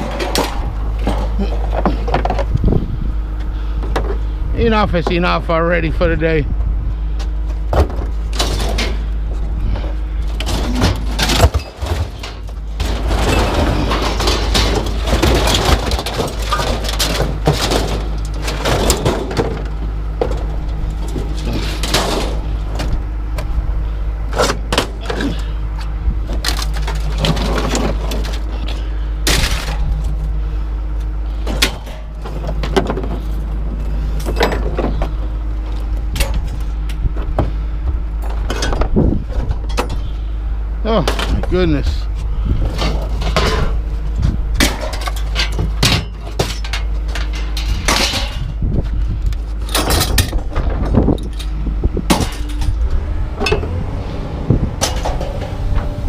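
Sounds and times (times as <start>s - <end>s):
knocks and clanks: 0.0s - 2.6s, 7.2s - 23.5s, 31.4s - 40.1s, 42.6s - 53.8s, 54.4s - 56.0s
engine hum: 0.0s - 56.0s.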